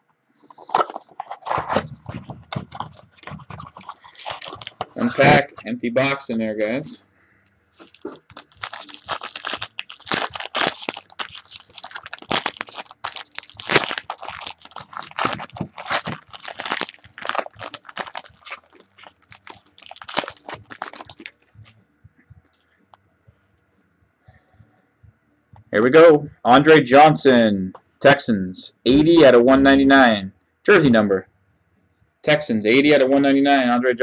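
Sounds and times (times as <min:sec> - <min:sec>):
packaging crinkling by hand: 0:00.5 - 0:05.6, 0:07.8 - 0:21.8.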